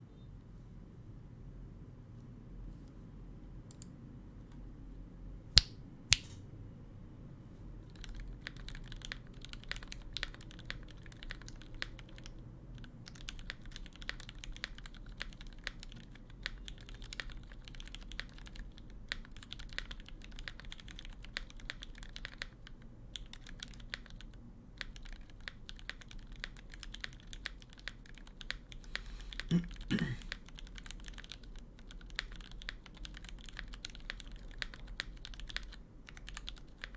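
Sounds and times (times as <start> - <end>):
sharp loud clicks: 5.6 - 6.4
mechanical keyboard typing: 7.9 - 36.9.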